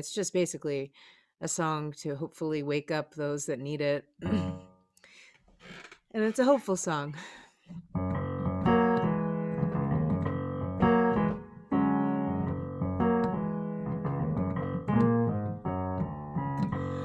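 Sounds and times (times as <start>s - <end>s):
piano chords: 4.2s - 4.8s, 7.9s - 17.0s.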